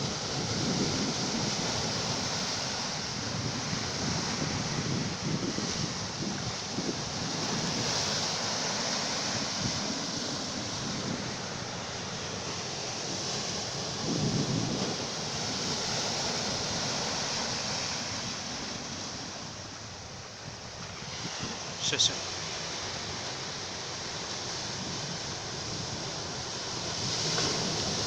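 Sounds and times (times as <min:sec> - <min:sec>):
wind buffeting microphone: 0:00.0 - 0:21.8
sea waves washing: 0:00.0 - 0:28.0.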